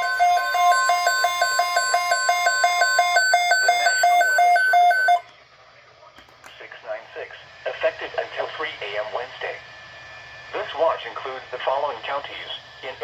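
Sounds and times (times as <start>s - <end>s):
steady attention tone: 0.0s - 5.2s
two-tone warble alarm: 0.0s - 5.3s.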